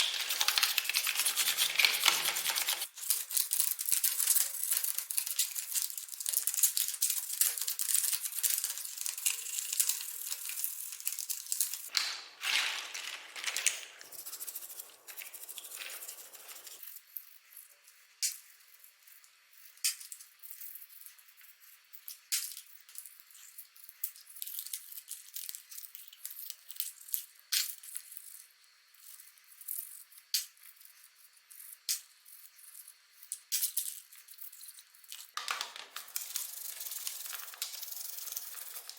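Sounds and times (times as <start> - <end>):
keyboard scrubbing and rattling: 12.4 - 16.8.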